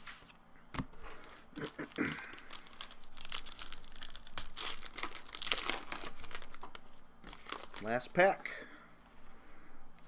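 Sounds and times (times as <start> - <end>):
wrapper crinkling and tearing: 1.2 - 8.2.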